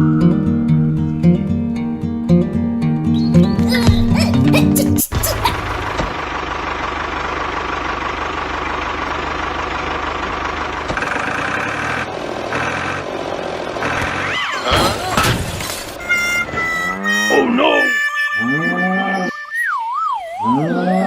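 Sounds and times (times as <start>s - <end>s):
tractor engine throbbing: 3.4s - 19.4s
pulsing high tones: 16.0s - 21.0s
sliding whistle-like tones: 16.0s - 21.0s.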